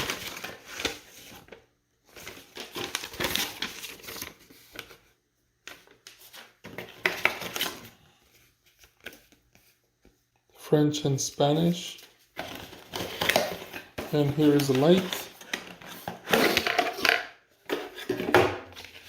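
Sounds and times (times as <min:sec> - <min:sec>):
paper rustling and crinkling: 0:00.0 - 0:10.2, 0:11.9 - 0:17.0, 0:17.6 - 0:19.0.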